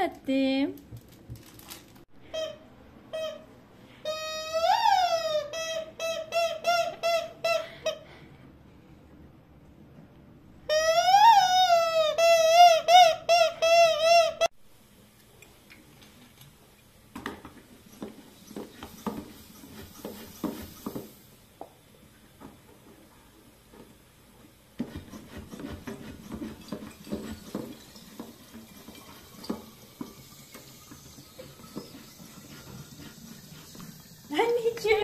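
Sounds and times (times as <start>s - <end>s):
kitchen items knocking and rubbing: 17.2s - 21.3s, 24.8s - 35.0s.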